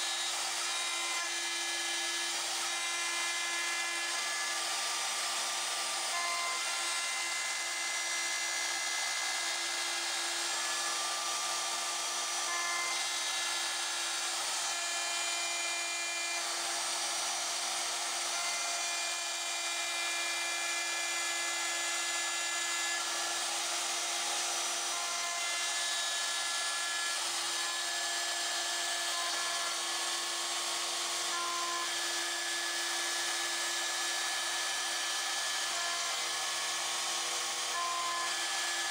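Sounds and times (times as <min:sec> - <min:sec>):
router spindle cutting metal: 0:00.0 - 0:38.9.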